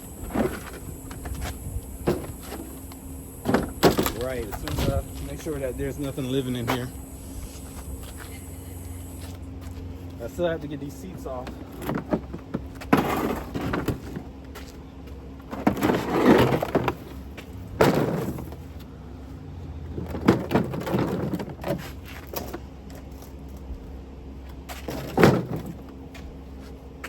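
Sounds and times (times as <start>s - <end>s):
steady low hum: 0.0s - 11.7s
plastic toy car knocks and scrapes: 11.8s - 14.2s.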